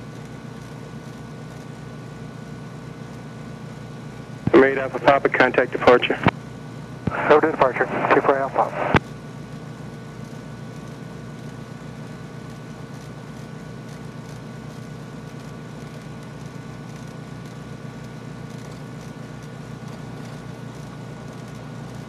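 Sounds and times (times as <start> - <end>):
piston aircraft engines idling: 4.5 - 6.3, 7.1 - 9.0.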